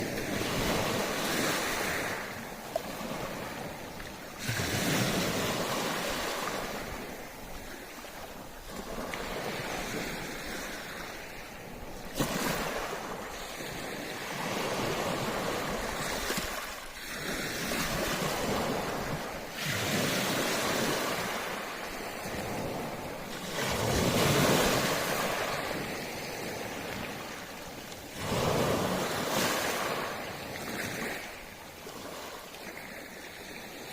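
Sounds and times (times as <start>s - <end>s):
ocean waves breaking on beach: 0.0s - 33.9s.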